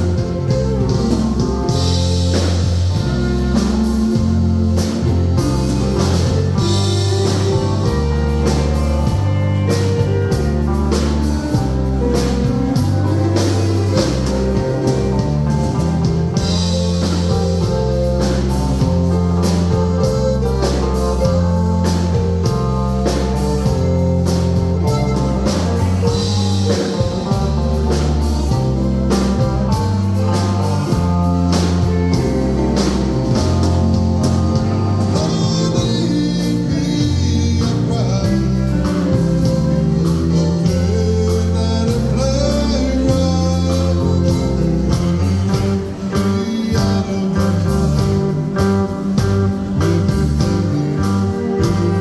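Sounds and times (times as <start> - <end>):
drum hits: 0.0 - 41.2
bass line: 0.0 - 52.0
live band playing: 0.0 - 52.0.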